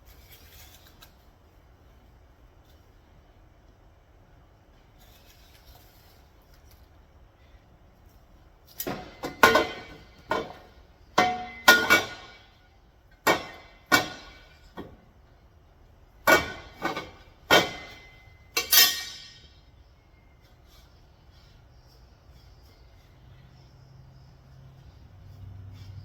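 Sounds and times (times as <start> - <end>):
steel bars clanking: 16.2 - 19.7.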